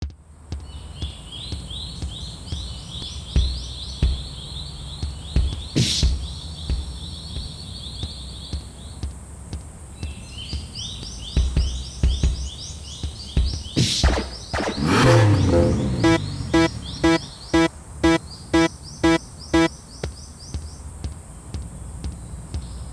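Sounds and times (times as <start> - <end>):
low thumps: 13.4 - 19.7
loud rushing burst: 13.8 - 19.7.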